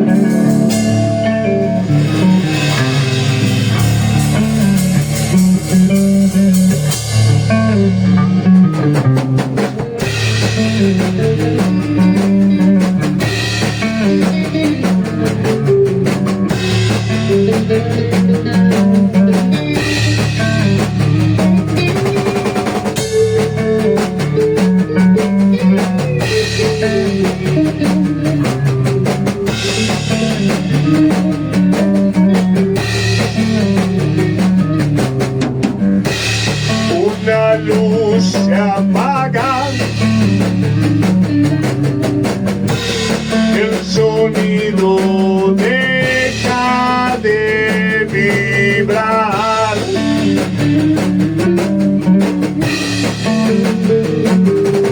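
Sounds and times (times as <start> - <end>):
bass guitar riff: 0.0 - 54.9
distorted electric guitars: 0.0 - 54.9
drum kit: 0.0 - 54.9.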